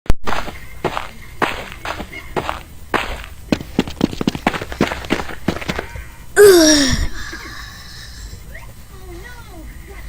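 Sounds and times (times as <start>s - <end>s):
footsteps: 0.3s - 6.0s.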